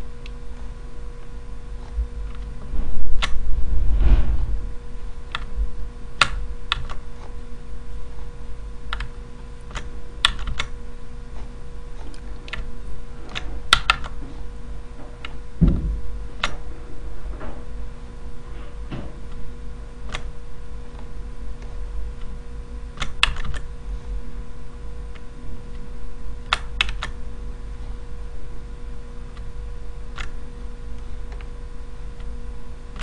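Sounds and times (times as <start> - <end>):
steady low hum: 0.0 - 33.0
low rumble: 2.0 - 6.0
short low thump: 2.7 - 5.7, 15.6 - 16.0.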